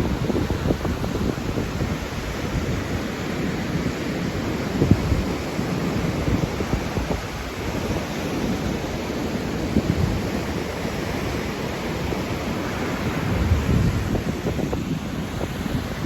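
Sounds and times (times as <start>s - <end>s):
surf washing onto beach: 0.0s - 16.0s
wind buffeting microphone: 0.0s - 16.0s.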